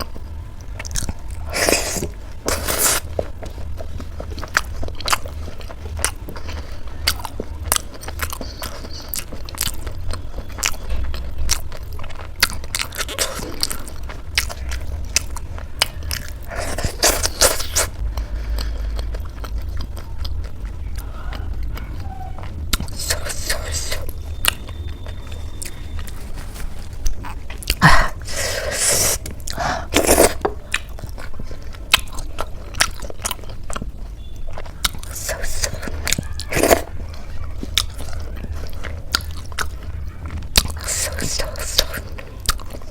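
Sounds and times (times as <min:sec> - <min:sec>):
crunching and chewing food: 0:00.0 - 0:42.9
low hum: 0:13.6 - 0:28.6.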